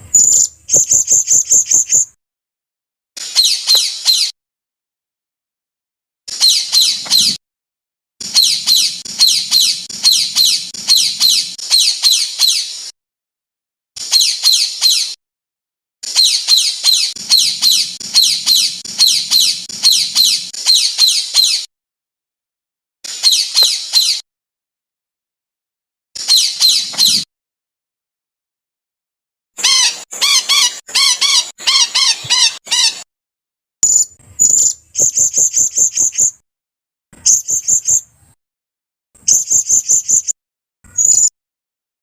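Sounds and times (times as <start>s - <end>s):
songbird rapid high chirping: 0.1s - 2.2s, 6.3s - 7.4s, 8.2s - 12.9s, 14.0s - 15.2s, 16.0s - 21.7s, 33.8s - 36.4s, 37.2s - 38.1s, 39.2s - 41.3s.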